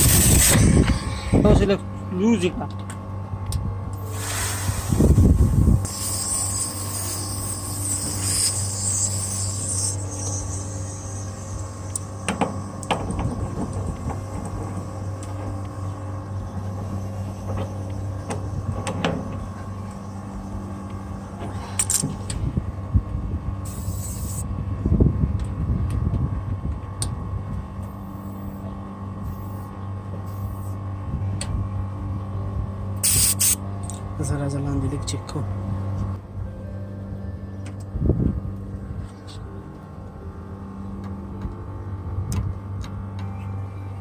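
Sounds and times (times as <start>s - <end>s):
steady machine hum: 0.0s - 44.0s.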